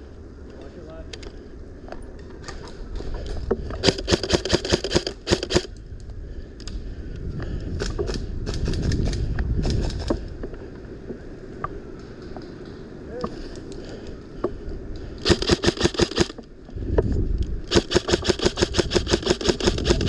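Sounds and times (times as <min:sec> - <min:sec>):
airsoft guns firing: 0:03.8 - 0:05.7, 0:15.2 - 0:16.4, 0:17.7 - 0:20.0.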